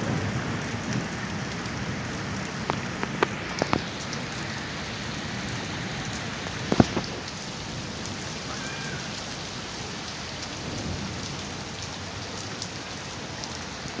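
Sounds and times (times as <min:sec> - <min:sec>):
steady rain falling: 0:00.0 - 0:14.0
sharp drip-like taps: 0:02.6 - 0:04.1, 0:06.4 - 0:07.3.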